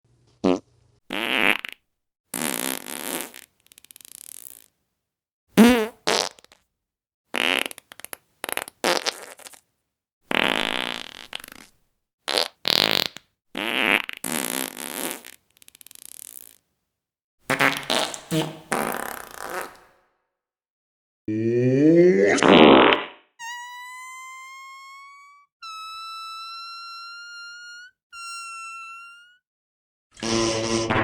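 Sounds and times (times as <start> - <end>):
fart sound effects: 0.4 - 1.8, 2.4 - 4.7, 5.6 - 6.6, 7.4 - 9.6, 10.3 - 11.7, 12.3 - 16.6, 17.5 - 20.0, 21.3 - 29.4, 30.2 - 31.0.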